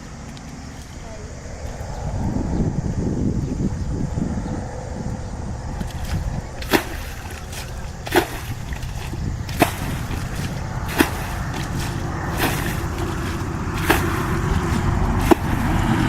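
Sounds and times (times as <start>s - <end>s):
steady low rumble: 0.0s - 16.0s
sharp slapping strikes: 5.9s - 15.9s.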